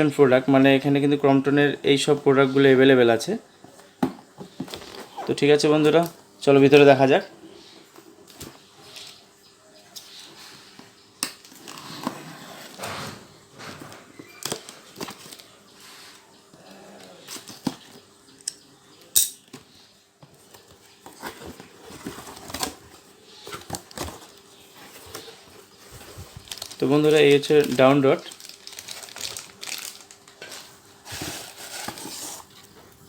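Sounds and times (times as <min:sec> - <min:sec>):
packing rustling: 0:20.4 - 0:33.0.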